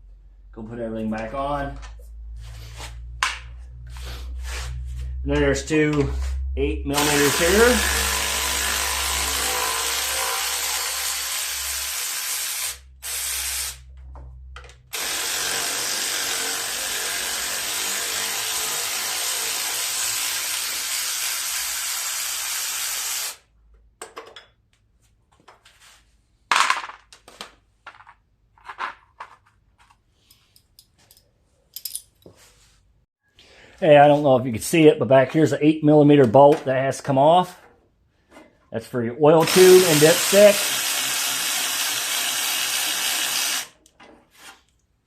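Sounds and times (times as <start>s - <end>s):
power tool running: 6.9s - 13.8s, 14.9s - 23.4s, 39.4s - 43.8s
metal parts clicking and rattling: 30.2s - 32.3s.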